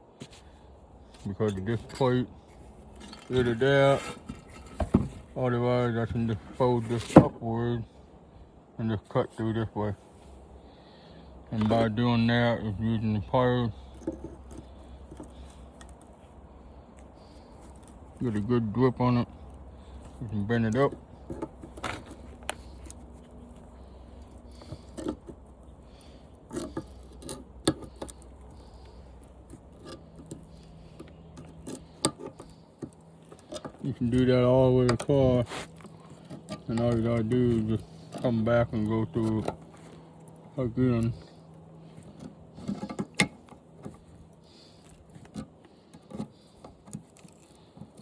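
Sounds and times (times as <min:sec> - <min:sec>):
pliers clicking and scraping metal: 0:13.9 - 0:48.0.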